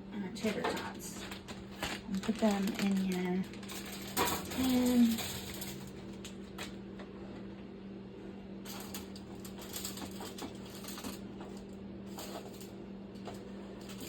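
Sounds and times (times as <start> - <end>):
steady low hum: 0.0 - 14.0
food clattering into a foil pan: 0.5 - 5.9.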